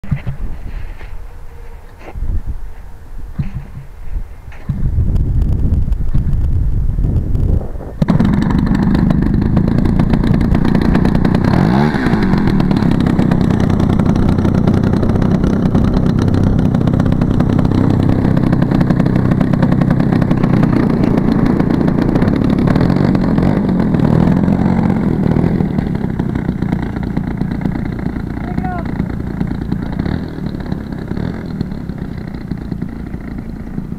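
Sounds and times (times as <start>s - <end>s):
model airplane gasoline engine: 7.7s - 33.9s.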